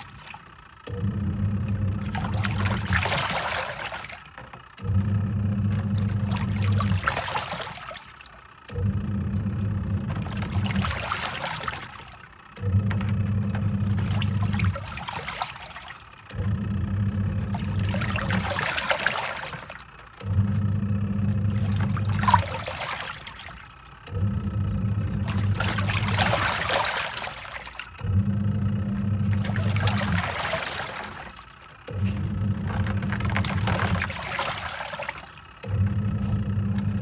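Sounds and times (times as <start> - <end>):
washing machine motor humming: 0.0 - 37.0
water swishing and surging: 17.4 - 19.8, 21.4 - 23.6, 25.2 - 27.9, 29.2 - 35.4.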